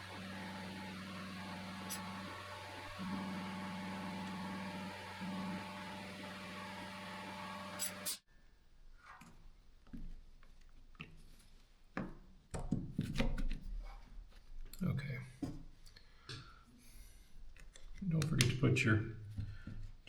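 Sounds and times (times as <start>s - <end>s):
air blower hissing: 0.0s - 8.2s.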